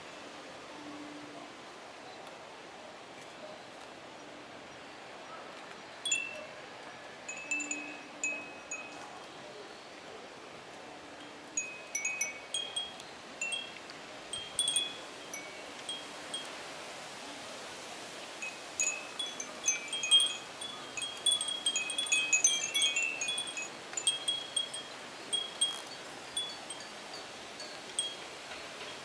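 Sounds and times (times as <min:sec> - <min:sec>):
wind chimes tinkling: 0:06.0 - 0:06.5, 0:07.3 - 0:09.2, 0:11.2 - 0:16.6, 0:18.4 - 0:29.0.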